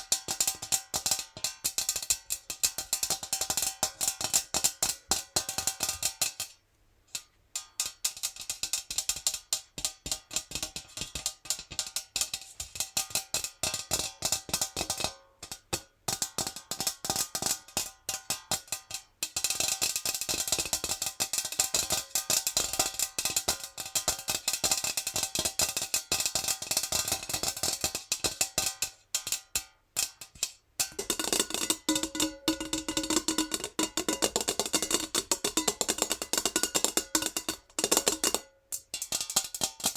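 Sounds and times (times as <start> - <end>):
fingernails tapping on metal jar: 27.4 - 39.9.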